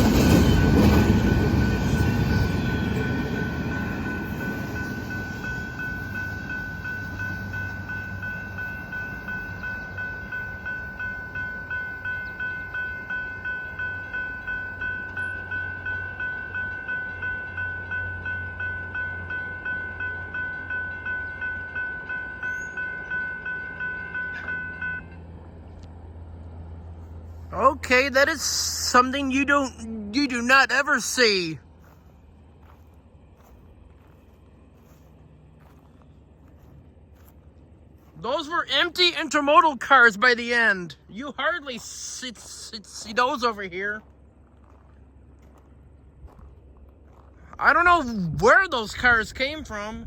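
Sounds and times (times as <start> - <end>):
crossing bell ringing: 0.0 - 25.8, 27.6 - 31.6, 38.0 - 45.7
freight train rumble: 0.0 - 50.0.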